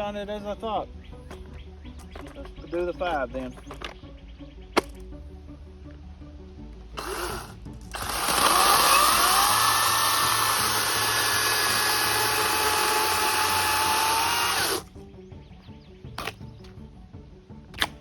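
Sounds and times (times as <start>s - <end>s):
electric chainsaw cutting log: 7.0s - 14.9s.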